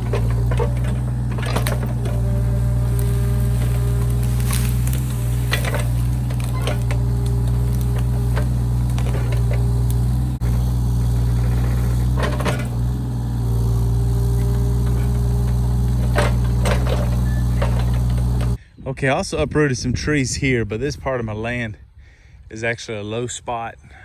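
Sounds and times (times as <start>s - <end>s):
excavator engine running: 0.0s - 18.6s
roots cracking and snapping: 0.0s - 18.6s.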